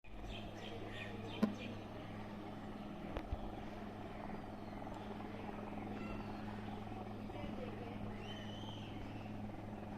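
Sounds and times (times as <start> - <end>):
low motor hum: 0.0 - 9.9
faint high chirps: 8.2 - 9.4.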